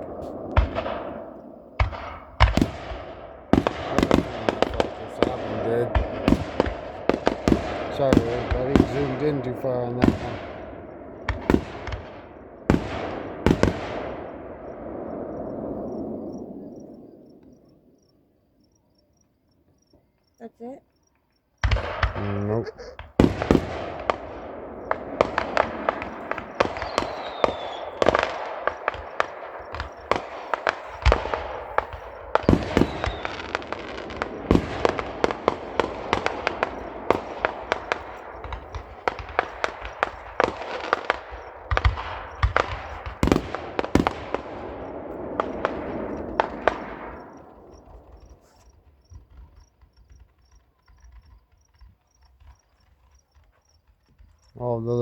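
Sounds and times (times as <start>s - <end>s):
fireworks crackling: 0.0s - 17.0s, 21.6s - 55.0s
fireworks bangs: 0.0s - 18.1s, 21.6s - 55.0s.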